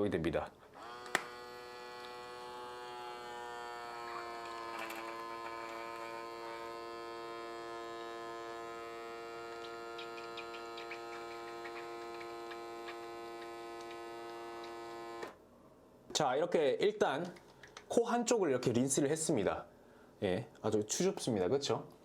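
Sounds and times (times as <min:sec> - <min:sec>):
electric pump humming: 0:00.8 - 0:15.4.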